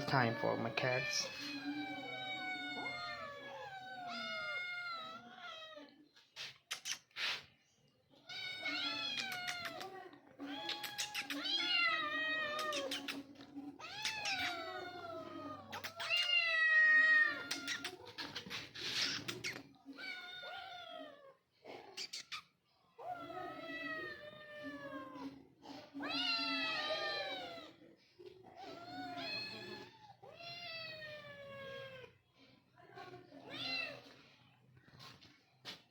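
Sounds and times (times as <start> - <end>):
cats meowing: 0.0 - 6.0, 8.2 - 21.4, 23.0 - 27.8, 28.6 - 32.2.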